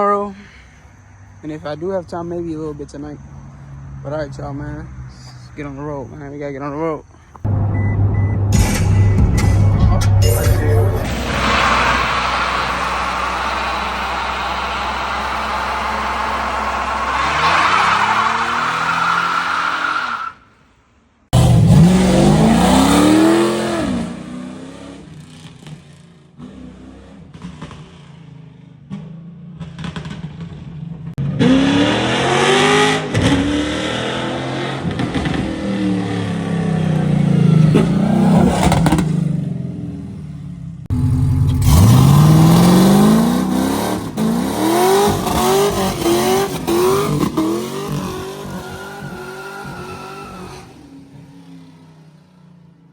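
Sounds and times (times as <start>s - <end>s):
car engine accelerating hard: 7.5s - 19.8s, 21.4s - 25.8s, 28.9s - 39.9s, 40.9s - 50.9s.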